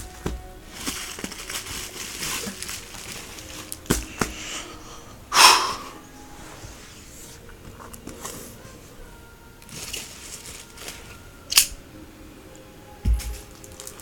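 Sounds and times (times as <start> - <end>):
loud breathy burst: 4.3 - 6.0.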